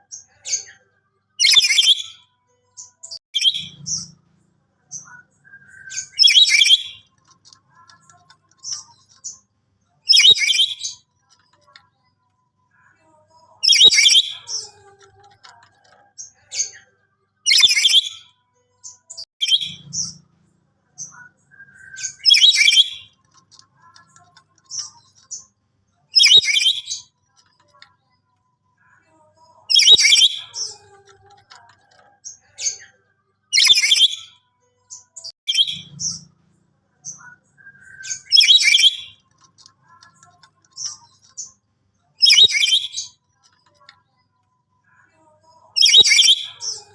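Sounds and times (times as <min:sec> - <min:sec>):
soft bird chirps: 0:04.8 - 0:12.1, 0:13.6 - 0:16.8, 0:17.5 - 0:20.3, 0:20.9 - 0:27.9, 0:29.5 - 0:32.9, 0:33.5 - 0:44.3, 0:45.5 - 0:46.9.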